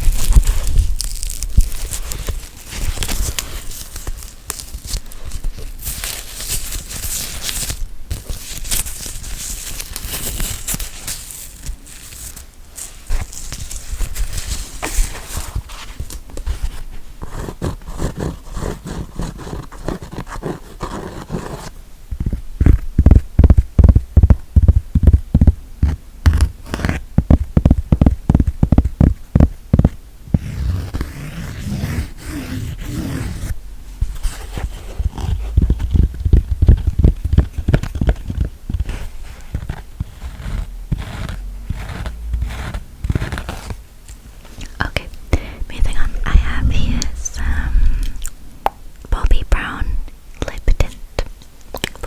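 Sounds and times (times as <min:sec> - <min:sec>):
soft scraping: 0:30.6 - 0:48.3.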